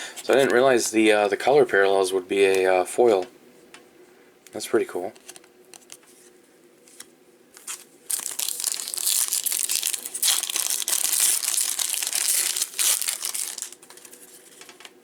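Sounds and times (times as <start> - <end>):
wrapper crackling being torn: 7.6 - 14.8.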